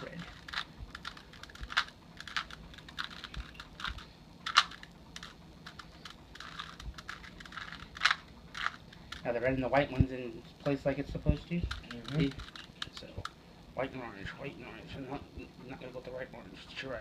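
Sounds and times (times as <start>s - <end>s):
puzzle cube layers clicking: 0.3s - 9.2s.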